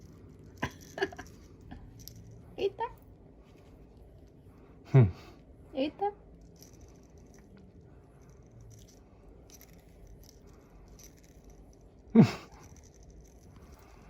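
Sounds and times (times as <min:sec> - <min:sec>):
light tapping and rattling: 0:06.4 - 0:14.0.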